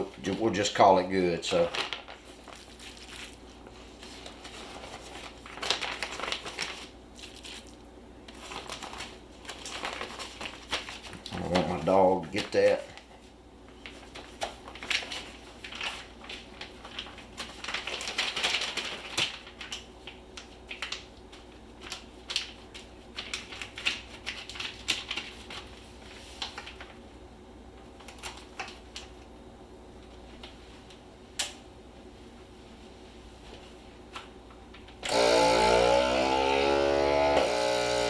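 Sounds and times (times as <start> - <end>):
plastic bag crinkling: 0.0 - 13.1, 13.7 - 27.0, 28.0 - 29.2.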